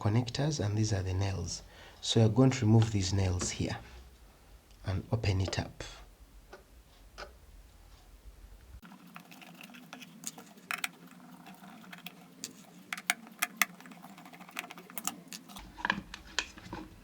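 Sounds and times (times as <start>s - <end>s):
screwdriver clicking on plastic: 9.4s - 16.5s.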